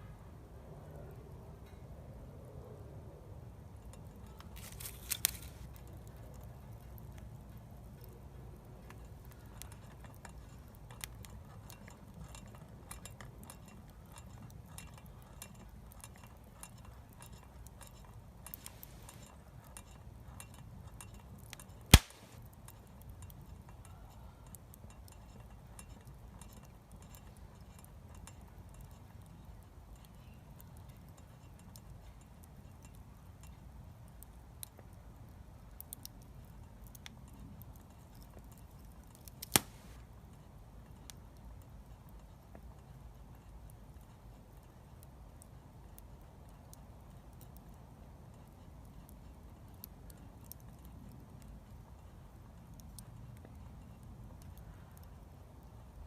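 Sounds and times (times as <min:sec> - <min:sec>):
wood fire crackling: 0:04.0 - 0:25.2, 0:25.8 - 0:56.0
loud sharp snap: 0:21.9 - 0:22.4, 0:39.5 - 0:39.9.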